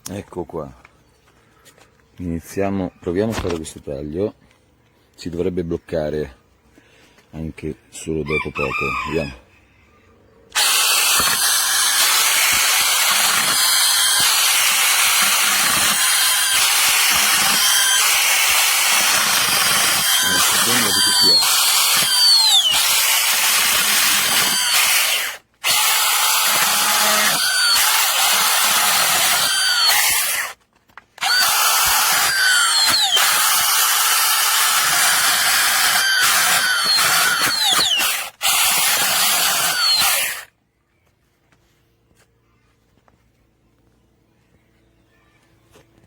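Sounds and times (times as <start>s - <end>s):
electric chainsaw cutting wood: 10.5s - 30.6s, 31.2s - 40.5s.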